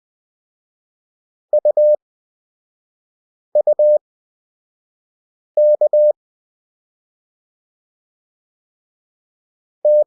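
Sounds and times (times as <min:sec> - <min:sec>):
morse code beeps: 0:03.6 - 0:04.0, 0:05.6 - 0:06.1.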